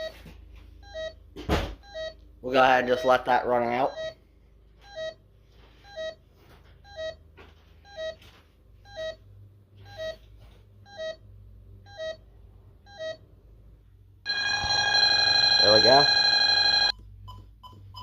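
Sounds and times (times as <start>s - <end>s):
alarm keypad beeps: 14.3s - 16.9s.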